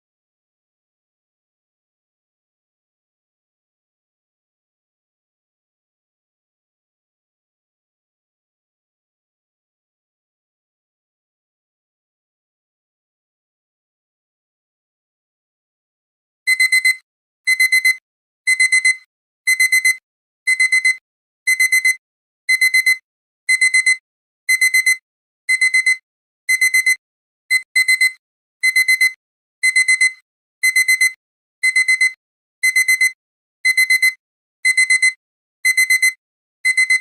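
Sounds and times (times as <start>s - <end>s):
alarm clock beeping: 16.5s - 37.0s.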